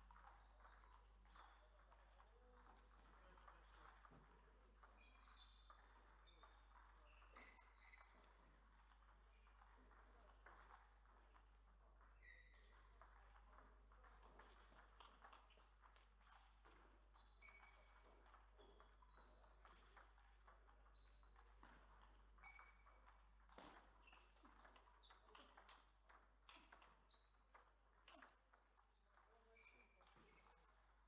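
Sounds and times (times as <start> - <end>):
table tennis balls clicking: 12.5 - 31.0.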